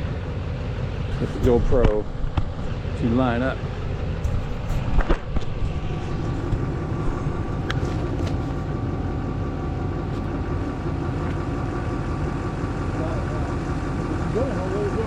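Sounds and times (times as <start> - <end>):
diesel engine idling: 0.0 - 15.0
sharp engine knocks: 1.1 - 2.8, 3.8 - 8.6.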